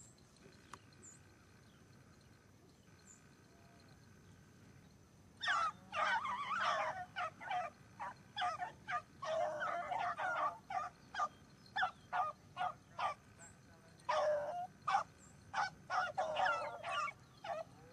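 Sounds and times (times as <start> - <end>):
hounds baying: 5.4 - 17.9.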